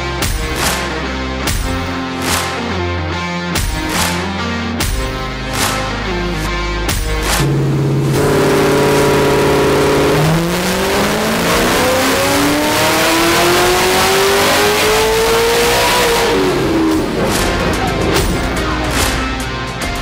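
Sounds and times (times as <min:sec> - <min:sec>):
car engine revving at full throttle: 0:07.0 - 0:19.2.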